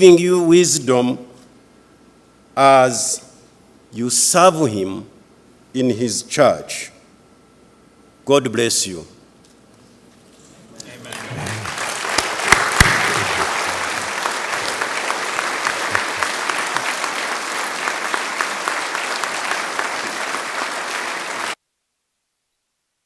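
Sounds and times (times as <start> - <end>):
large crowd applauding: 10.9 - 21.6.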